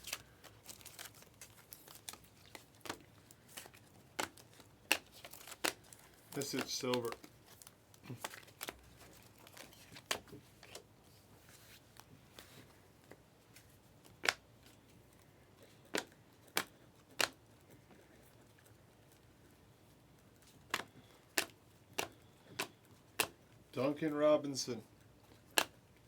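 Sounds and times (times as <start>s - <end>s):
cards clicking and snapping: 0.0s - 10.9s, 14.0s - 14.8s, 15.6s - 17.4s, 20.4s - 23.4s, 25.2s - 25.8s.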